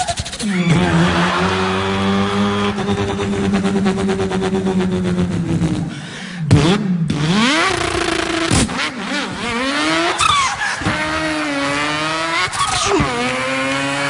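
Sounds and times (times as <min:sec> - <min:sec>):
man imitating car engine: 0:00.4 - 0:08.4, 0:09.5 - 0:14.0.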